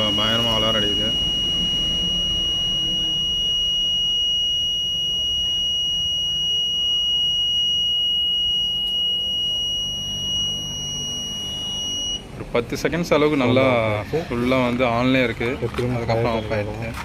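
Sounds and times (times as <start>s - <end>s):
buzzer high-pitched tone: 0.0s - 12.3s.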